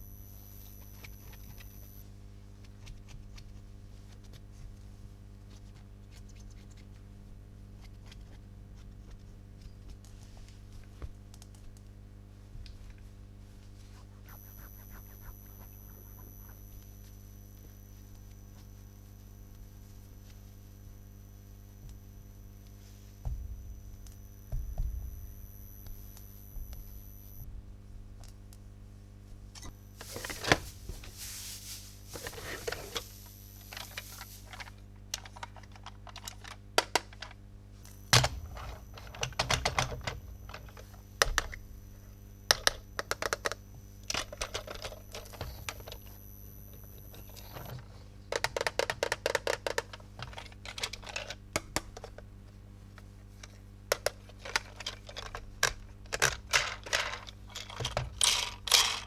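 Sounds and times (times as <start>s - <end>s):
low hum: 0.0s - 2.0s, 14.3s - 27.8s, 29.7s - 34.5s, 37.8s - 47.7s.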